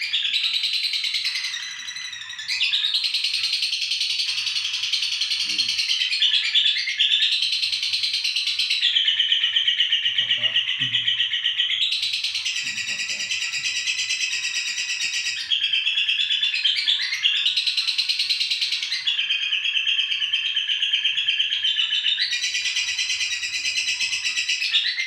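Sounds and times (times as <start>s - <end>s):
lovebird chattering: 7.3s - 15.8s.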